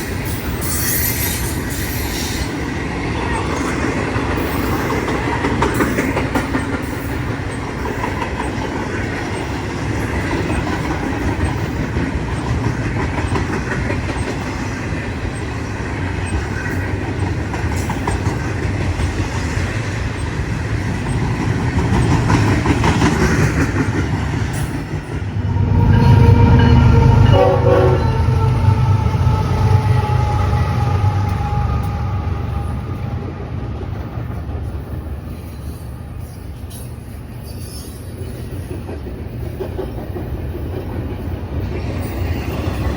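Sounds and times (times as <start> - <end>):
train wheels clattering: 0.0 - 42.9
deep locomotive rumble: 7.2 - 37.4
multi-tone train horn: 25.3 - 33.6.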